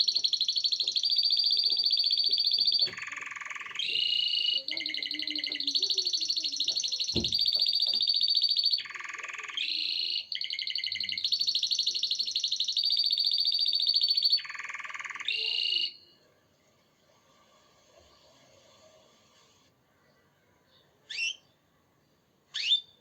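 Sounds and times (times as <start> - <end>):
canary singing trills: 0.0 - 16.2, 20.7 - 21.6.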